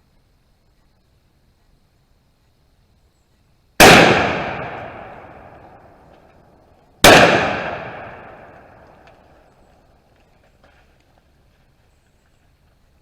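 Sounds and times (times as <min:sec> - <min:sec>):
shotgun shots echoing: 0:03.8 - 0:06.1, 0:07.0 - 0:09.2.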